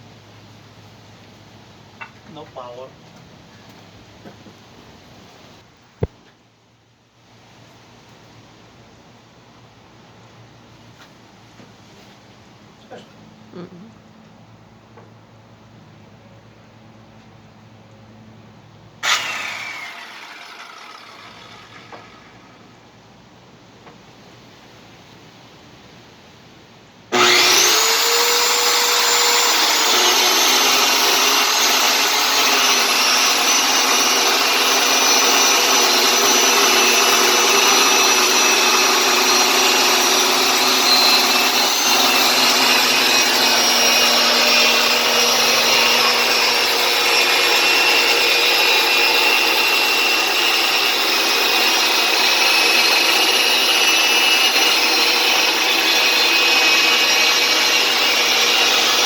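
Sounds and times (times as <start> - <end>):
circular saw ripping a board: 19.0 - 22.5, 27.1 - 59.0.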